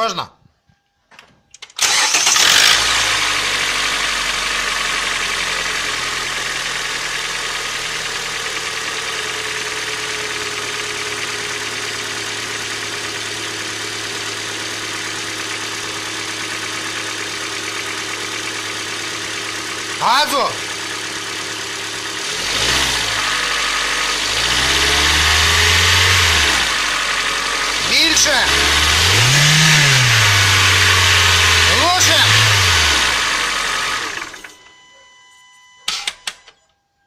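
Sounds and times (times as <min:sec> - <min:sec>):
car engine starting and idling: 0:01.6 - 0:35.0.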